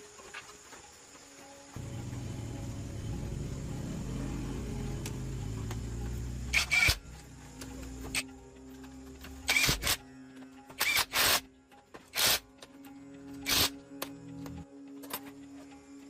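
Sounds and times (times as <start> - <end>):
machine humming: 1.8 - 8.2.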